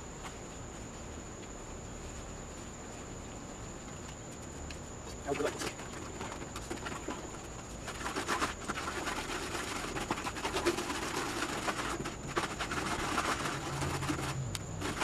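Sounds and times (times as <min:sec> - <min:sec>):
plaster mix stirred in bucket: 0:05.3 - 0:15.0.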